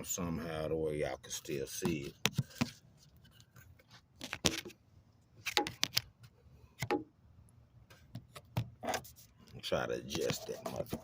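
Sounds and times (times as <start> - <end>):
phone handling clicks and knocks: 6.8 - 7.1.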